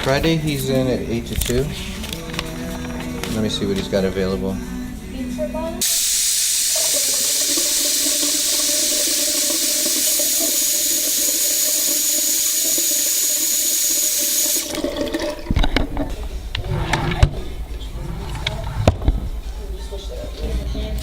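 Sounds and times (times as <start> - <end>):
water running from a tap: 5.8 - 15.7.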